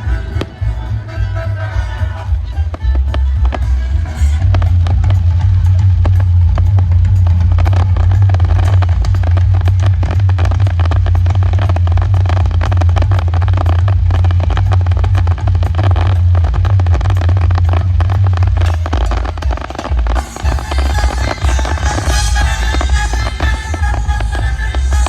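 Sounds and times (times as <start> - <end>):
fireworks crackling and bangs: 0.0 - 25.0
loud low rumble: 0.0 - 25.0.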